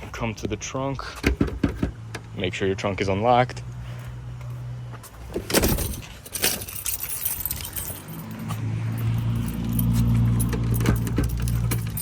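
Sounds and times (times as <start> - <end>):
car keys jangling: 5.4 - 12.0.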